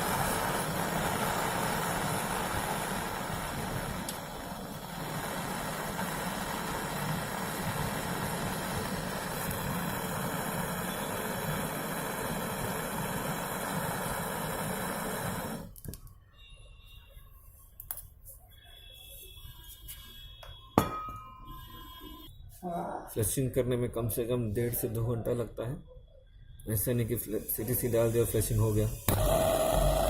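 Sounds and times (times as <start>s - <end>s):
compressor running with rushing hiss: 0.0s - 15.7s, 27.1s - 30.0s.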